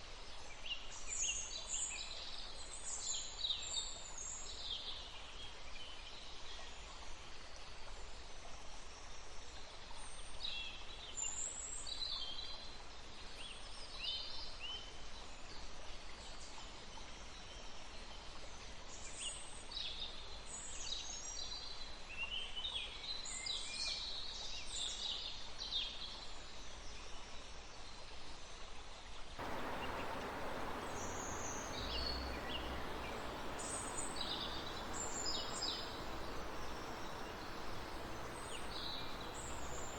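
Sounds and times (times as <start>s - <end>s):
flowing river water: 29.4s - 39.9s
forest birds chirping: 29.4s - 39.9s.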